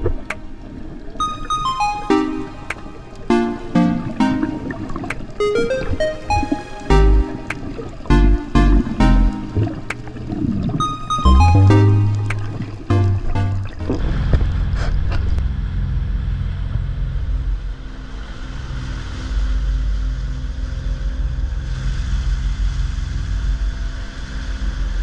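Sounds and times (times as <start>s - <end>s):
clicks: 11.1s - 14.0s.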